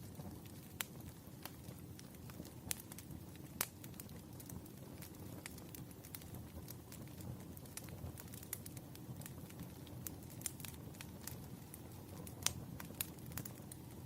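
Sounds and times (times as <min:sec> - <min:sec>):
low rumble of burning logs: 0:00.0 - 0:14.0
wood fire crackling: 0:00.0 - 0:14.0.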